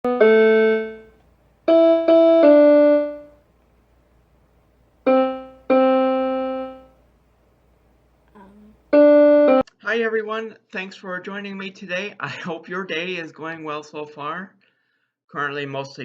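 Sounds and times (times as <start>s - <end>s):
piano-like keyboard notes: 0.1s - 3.4s, 5.0s - 7.0s, 8.9s - 9.6s.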